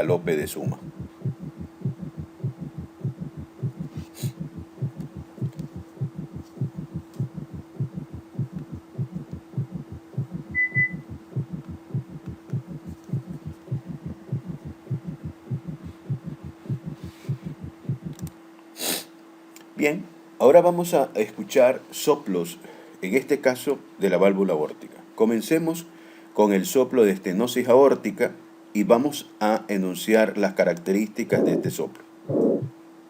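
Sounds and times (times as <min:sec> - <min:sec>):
galloping heartbeat thumps: 0:00.0 - 0:18.3, 0:32.3 - 0:32.7
steady hum: 0:00.0 - 0:18.6, 0:31.1 - 0:33.0.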